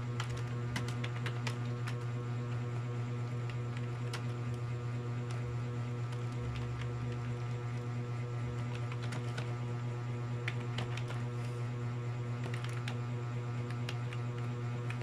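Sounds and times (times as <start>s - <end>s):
keyboard typing: 0.0s - 2.1s, 6.1s - 7.4s, 8.5s - 9.6s, 10.4s - 11.3s, 12.4s - 13.0s, 13.7s - 15.0s
electrical hum: 0.0s - 15.0s.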